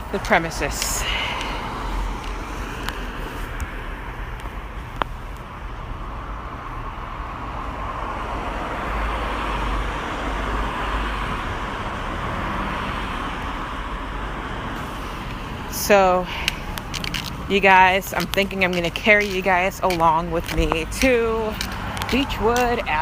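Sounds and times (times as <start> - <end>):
cars passing on a street: 0.0 - 23.0
sharp tick: 18.1 - 23.0.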